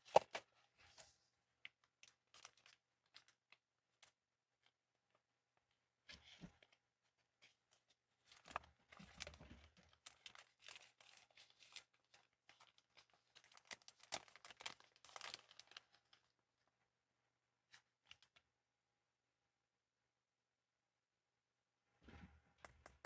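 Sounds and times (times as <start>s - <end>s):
packaging crinkling and tearing: 10.0s - 16.2s.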